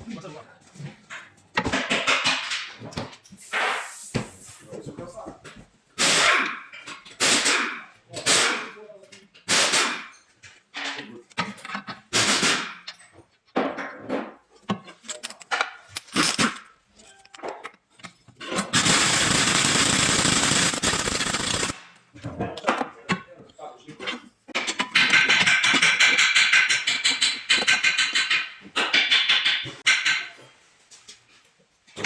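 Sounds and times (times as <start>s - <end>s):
workshop tool running: 18.7s - 21.8s.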